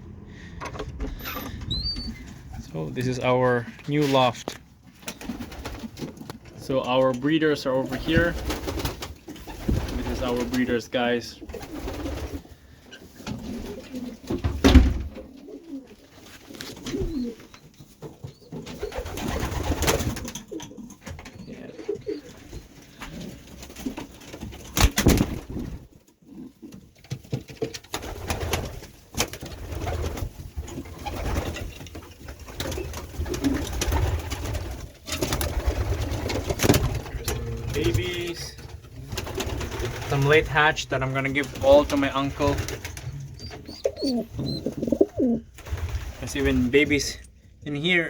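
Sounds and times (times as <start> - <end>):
pigeons cooing: 7.8 - 24.5, 29.3 - 40.4, 41.7 - 46.5.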